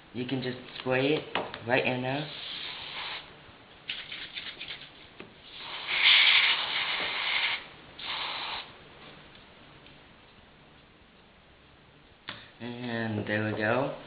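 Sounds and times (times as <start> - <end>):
aerosol spray hissing: 2.3 - 3.3, 5.5 - 8.7.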